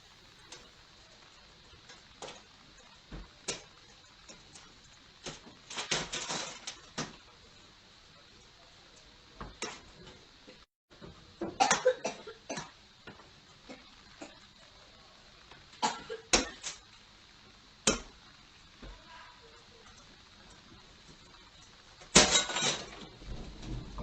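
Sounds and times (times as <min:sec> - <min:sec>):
steady hiss: 0:00.0 - 0:24.0.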